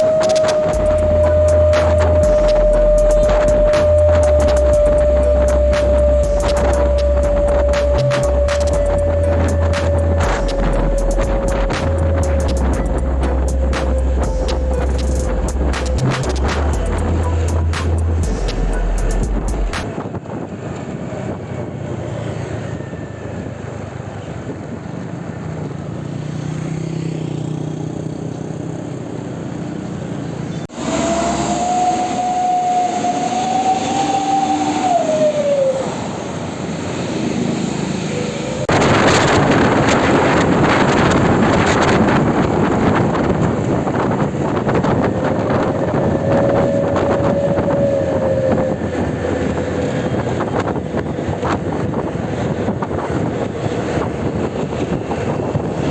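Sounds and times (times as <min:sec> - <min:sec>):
air horn blast: 0:00.0 - 0:19.9, 0:30.7 - 0:36.3, 0:44.3 - 0:50.4
buses passing: 0:00.0 - 0:55.9.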